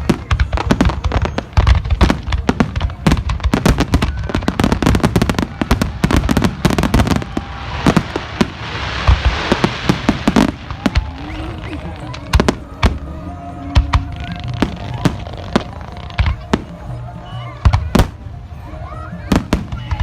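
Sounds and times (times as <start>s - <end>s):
fireworks crackling hiss: 0.0s - 13.1s
fireworks booms and bangs: 0.0s - 16.9s, 17.6s - 18.4s, 19.3s - 20.0s.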